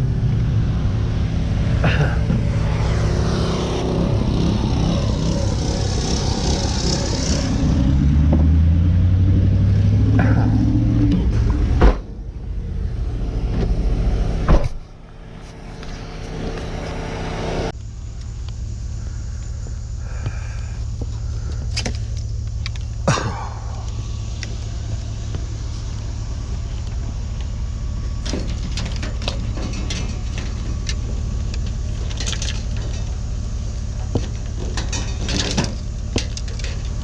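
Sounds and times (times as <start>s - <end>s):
vehicle rumble: 0.0s - 37.0s
loose items clinking and rattling: 28.2s - 33.2s, 34.2s - 37.0s.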